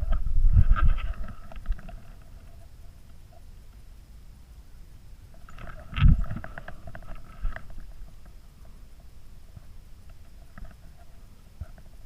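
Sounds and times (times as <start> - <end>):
wind buffeting microphone: 0.0 - 2.5, 5.6 - 8.3
faint crackle: 0.0 - 12.0.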